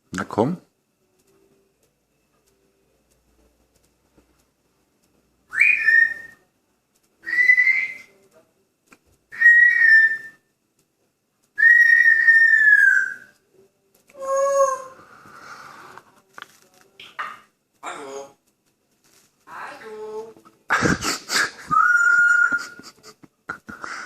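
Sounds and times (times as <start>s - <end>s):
parrot whistling: 5.5s - 6.4s, 7.2s - 8.1s, 9.3s - 10.5s, 11.6s - 13.3s, 21.6s - 22.8s.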